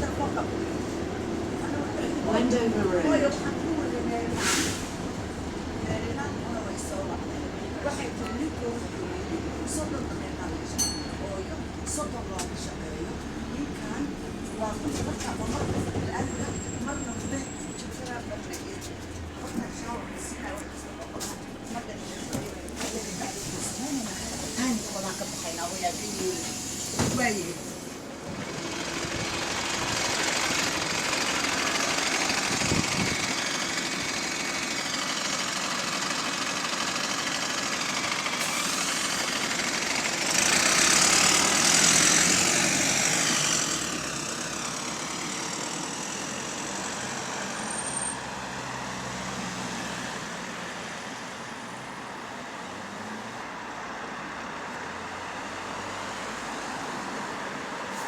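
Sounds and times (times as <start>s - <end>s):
bus drivetrain whine: 0.0s - 58.0s
air brakes hissing: 4.3s - 5.2s, 22.8s - 28.0s, 38.3s - 39.3s.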